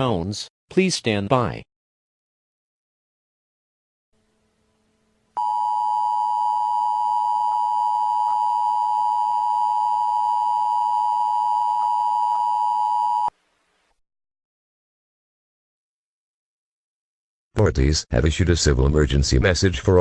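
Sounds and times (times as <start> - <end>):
two-tone alert alarm: 5.4 - 13.3.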